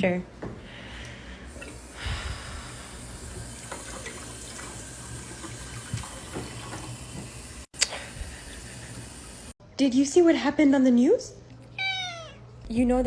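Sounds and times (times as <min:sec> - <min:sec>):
water running from a tap: 0:01.5 - 0:09.6.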